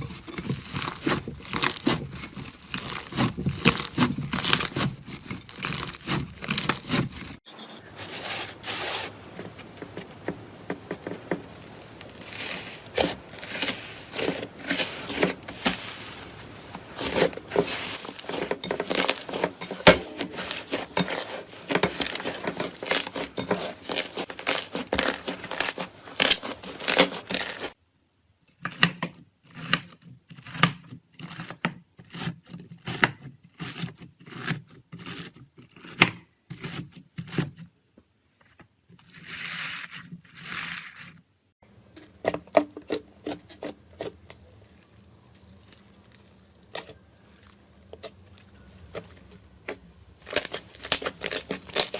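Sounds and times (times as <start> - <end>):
slime crackling and popping: 0.2 - 7.4, 45.4 - 51.9.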